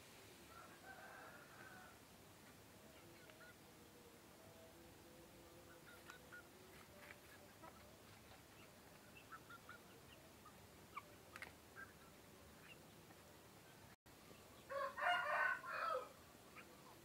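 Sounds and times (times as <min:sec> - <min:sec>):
chickens chirping: 0:02.4 - 0:14.9, 0:16.2 - 0:17.0.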